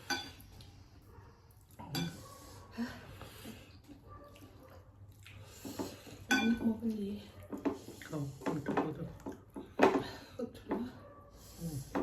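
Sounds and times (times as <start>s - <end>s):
cutlery clinking on plate: 6.3s - 6.7s.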